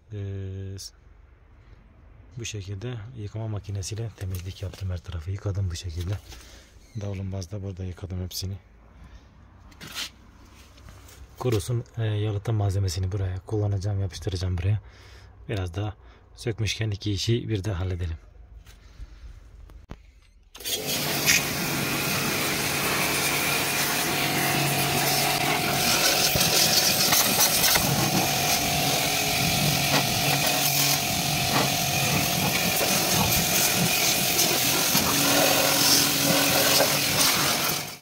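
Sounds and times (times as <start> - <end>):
power tool rasping: 20.6 - 38.0.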